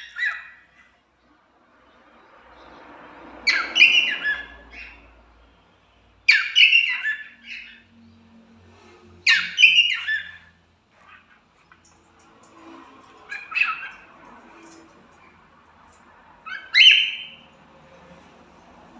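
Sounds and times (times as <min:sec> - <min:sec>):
cockatiels calling: 0:00.0 - 0:00.9, 0:03.4 - 0:05.1, 0:06.3 - 0:07.9, 0:09.2 - 0:11.8, 0:13.2 - 0:14.8, 0:16.4 - 0:17.4.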